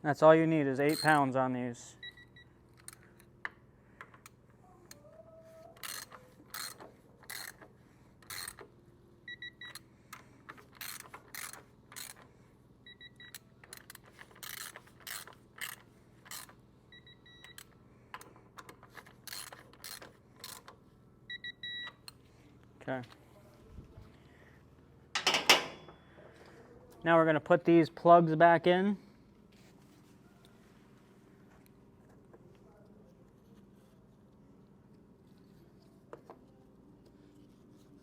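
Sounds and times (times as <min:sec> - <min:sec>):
torque wrench ratchet clicking: 0:05.8 - 0:07.6, 0:08.2 - 0:08.7, 0:10.8 - 0:12.2, 0:13.7 - 0:16.6, 0:19.3 - 0:20.7.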